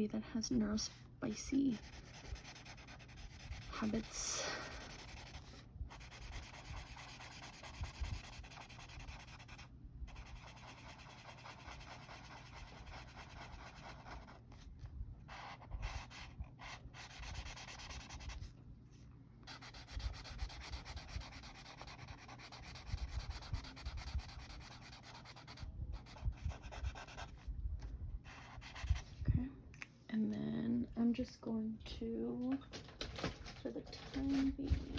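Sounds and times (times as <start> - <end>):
pen scribbling on paper: 1.3 - 14.4, 15.3 - 18.4, 19.5 - 27.4, 28.3 - 29.1.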